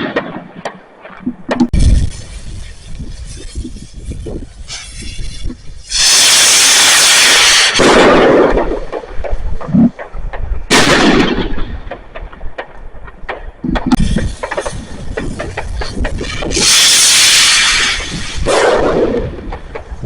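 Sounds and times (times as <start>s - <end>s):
fireworks blasts: 0.0s - 20.0s
sharp firework cracks: 4.6s - 20.0s.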